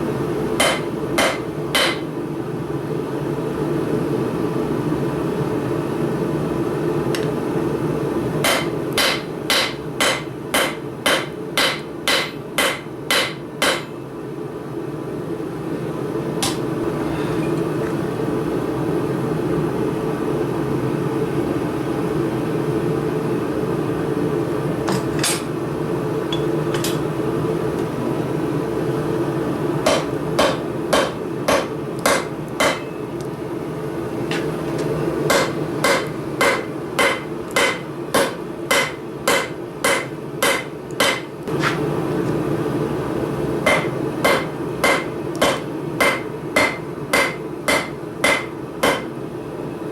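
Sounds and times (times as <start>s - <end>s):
hammer striking steel on anvil: 0.6s - 2.1s, 8.4s - 14.0s, 16.4s - 16.6s, 29.9s - 33.0s, 35.3s - 41.3s, 43.7s - 49.1s.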